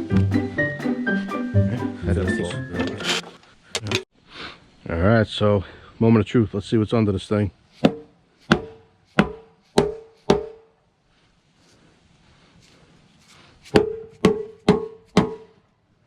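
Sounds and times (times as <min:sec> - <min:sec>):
hammer blows on metal: 0:07.8 - 0:10.8, 0:13.7 - 0:15.6.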